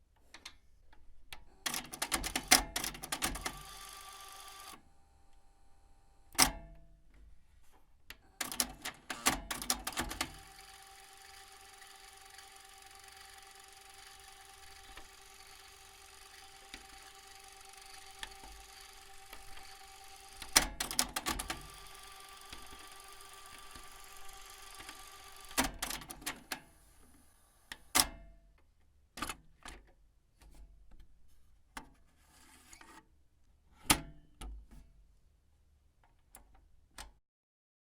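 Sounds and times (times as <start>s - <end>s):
cassette tape mechanism running: 1.6s - 4.8s, 8.4s - 28.0s
tape deck mechanism clunks: 17.9s - 26.6s
cassette control clicks: 20.4s - 22.9s, 23.5s - 26.6s.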